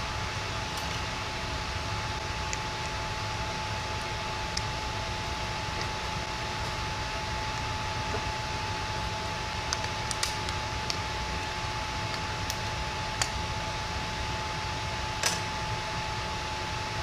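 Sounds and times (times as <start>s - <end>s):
faint steady whine: 0.0s - 17.0s.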